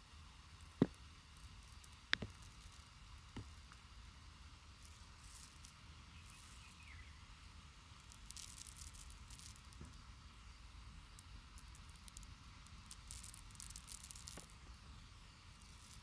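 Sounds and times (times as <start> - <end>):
low hum and hiss: 0.0 - 16.0
crackly rustling: 11.1 - 14.6.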